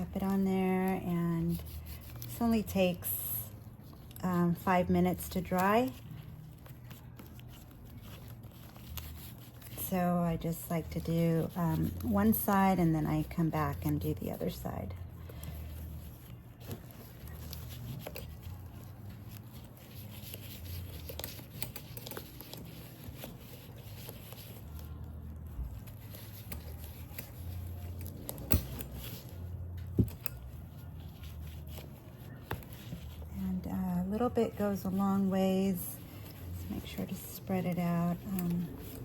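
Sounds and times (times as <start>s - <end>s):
fingers rubbing leather: 15.6s - 34.2s.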